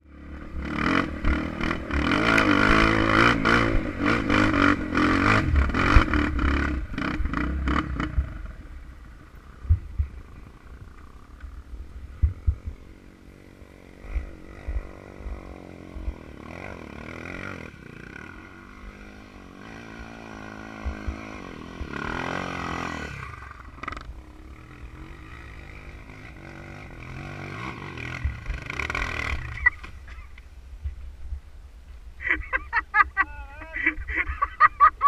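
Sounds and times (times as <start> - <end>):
motorcycle engines revving: 0.0 - 30.4
wind thumping on microphone: 9.6 - 10.4, 12.0 - 12.8.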